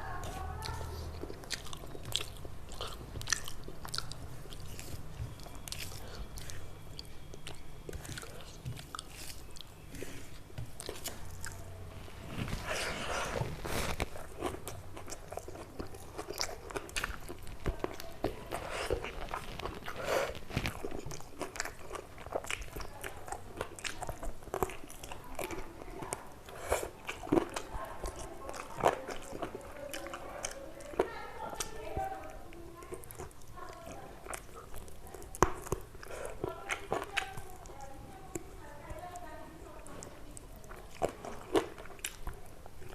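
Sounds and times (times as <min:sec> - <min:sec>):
crunchy chewing: 0:00.0 - 0:42.9.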